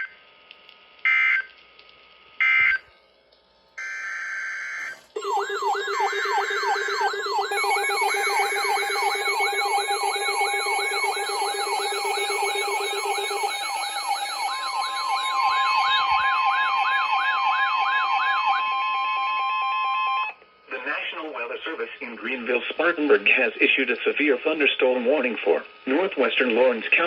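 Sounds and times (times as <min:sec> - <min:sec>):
falling siren-like alert tone: 0:03.8 - 0:20.4
steady electronic tones: 0:03.8 - 0:20.4.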